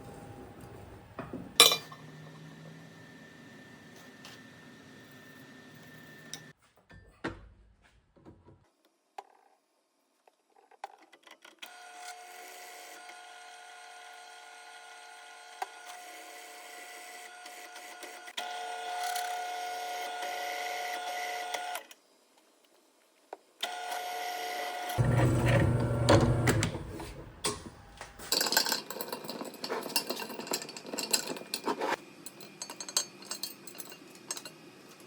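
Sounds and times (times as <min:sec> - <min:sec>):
small electric motor whine: 0:11.7 - 0:22.0, 0:23.6 - 0:28.2.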